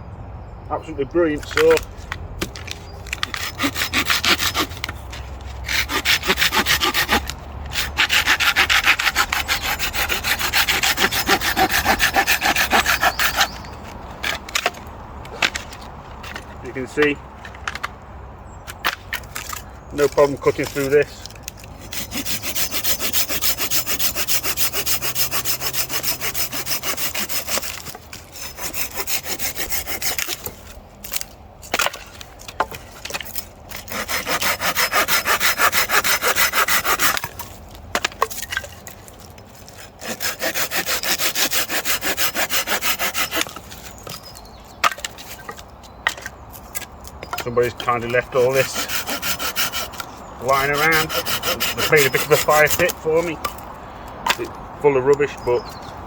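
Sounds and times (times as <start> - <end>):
pull saw cutting wood: 1.3 - 17.2, 18.8 - 45.4, 46.1 - 53.6.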